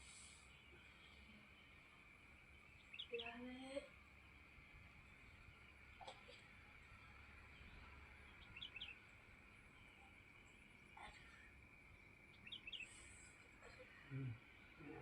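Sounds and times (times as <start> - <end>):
small bird chirping: 2.4 - 4.3, 7.6 - 15.0.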